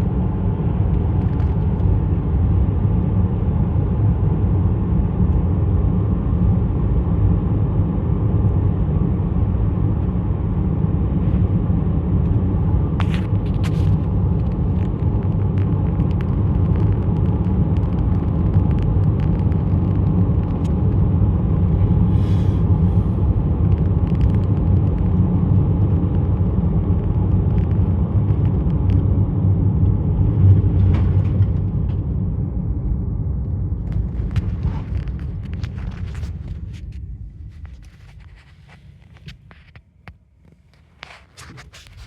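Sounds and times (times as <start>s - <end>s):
steady low rumble: 0.0s - 42.0s
sharp clicks and ticks: 13.0s - 21.8s.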